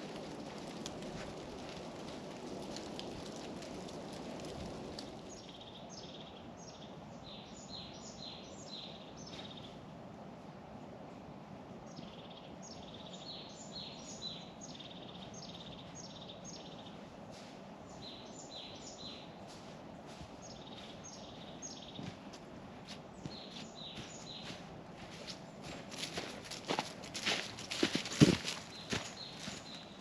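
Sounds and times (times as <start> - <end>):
low outdoor background noise: 0.0 - 30.0
songbird singing: 5.2 - 9.9, 11.8 - 30.0
footsteps: 19.4 - 30.0.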